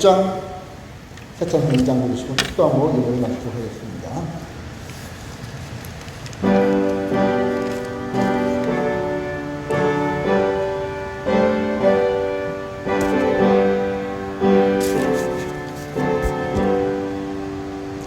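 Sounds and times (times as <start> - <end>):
piano playing slow hymn chords: 6.4 - 18.0.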